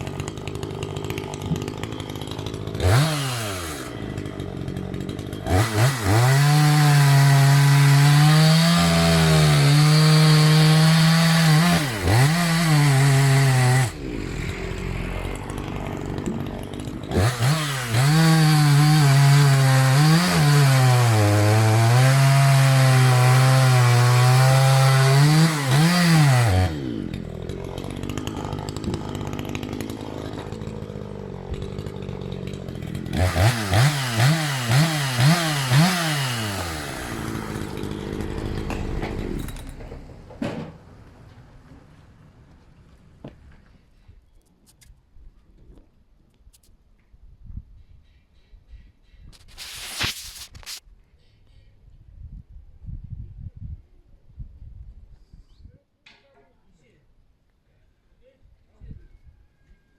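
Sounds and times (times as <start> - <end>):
chainsaw idling: 0.0 - 40.4
chainsaw cutting wood: 0.0 - 40.8, 49.4 - 50.8.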